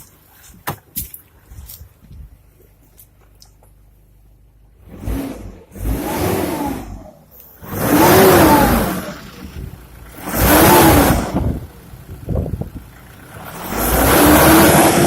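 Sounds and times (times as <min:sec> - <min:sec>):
engine revving: 0:04.8 - 0:15.0.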